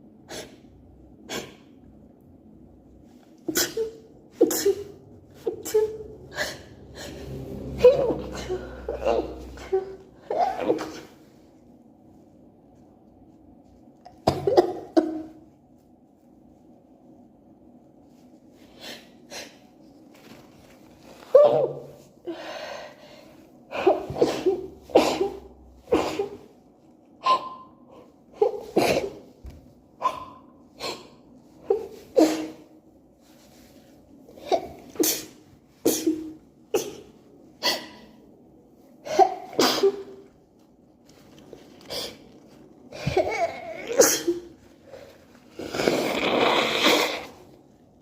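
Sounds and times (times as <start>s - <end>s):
woman sneezing: 3.5s - 6.8s, 30.0s - 32.7s, 34.4s - 38.2s, 39.0s - 40.2s, 43.0s - 44.5s.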